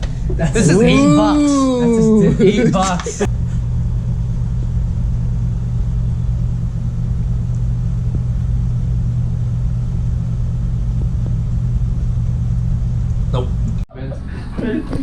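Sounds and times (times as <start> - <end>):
constant low hum: 0.0 - 15.0
low rumble: 3.2 - 14.2.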